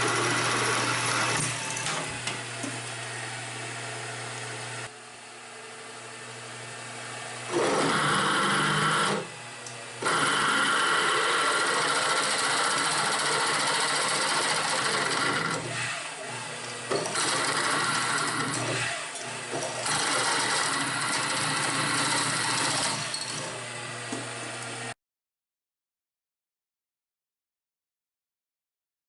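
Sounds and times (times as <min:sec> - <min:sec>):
angle grinder grinding steel: 0:00.0 - 0:02.0, 0:10.0 - 0:23.7.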